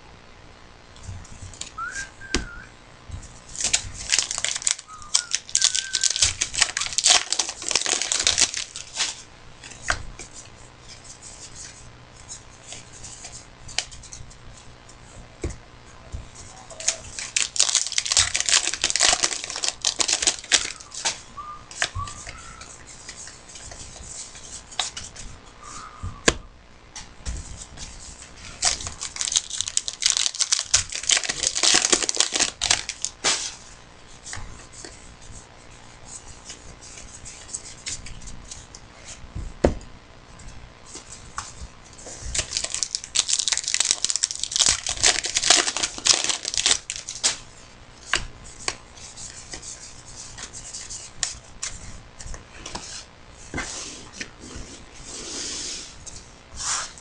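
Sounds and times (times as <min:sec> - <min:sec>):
cards shuffling: 0:03.4 - 0:10.3, 0:16.4 - 0:25.3, 0:27.5 - 0:35.0
wrappers ripping and crinkling: 0:03.5 - 0:09.2, 0:16.7 - 0:21.2, 0:28.4 - 0:33.6, 0:42.1 - 0:47.5.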